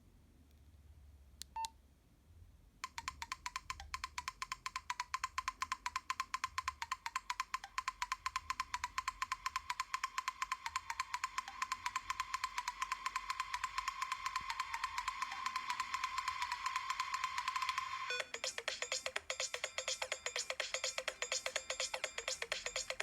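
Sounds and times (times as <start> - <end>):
phone keypad clicks: 2.8 - 17.8
percussive phone ringtone: 10.5 - 23.0.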